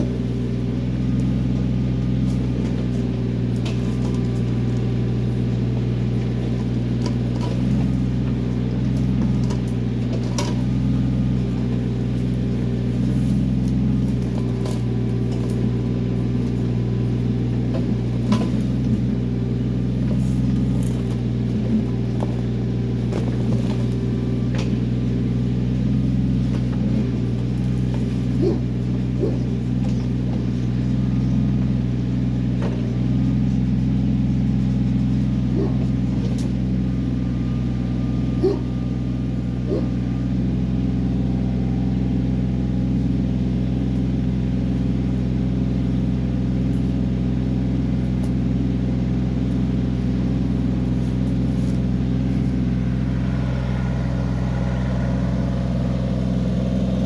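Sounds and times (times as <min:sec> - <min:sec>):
tractor diesel engine running: 0:00.0 - 0:57.0.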